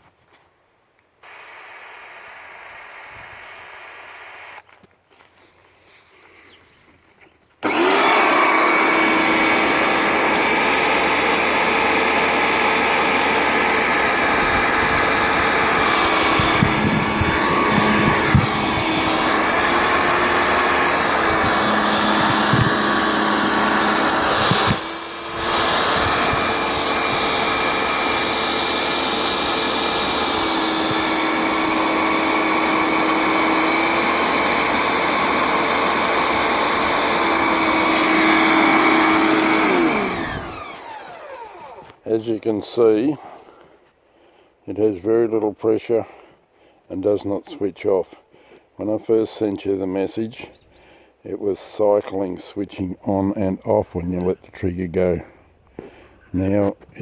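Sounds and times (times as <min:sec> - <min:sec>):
pressure washer motor and pump running: 0:01.2 - 0:04.6, 0:07.6 - 0:42.0.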